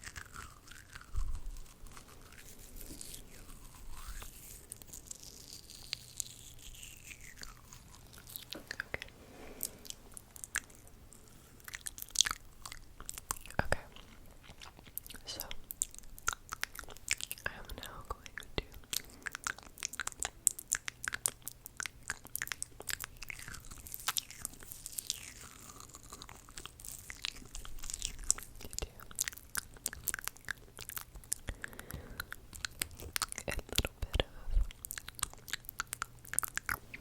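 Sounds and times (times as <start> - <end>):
wet mouth clicks and smacks: 11.6 - 37.0.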